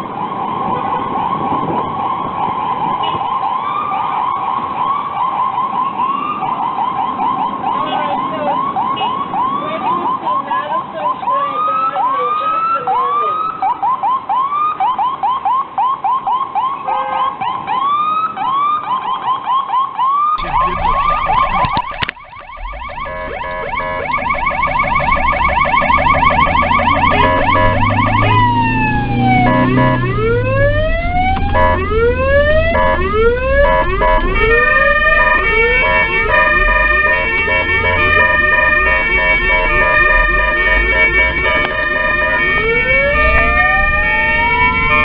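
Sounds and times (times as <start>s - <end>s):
ambulance siren yelp: 0.0s - 45.0s
siren warble and wail: 0.0s - 45.0s
vehicle engine rumble: 20.4s - 45.0s.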